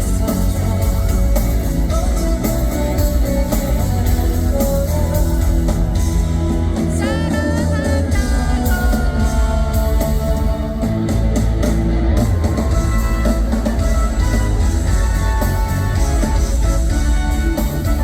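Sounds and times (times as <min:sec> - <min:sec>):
person singing: 0:00.0 - 0:11.3
drums: 0:00.0 - 0:18.0
electric guitar: 0:00.0 - 0:18.0.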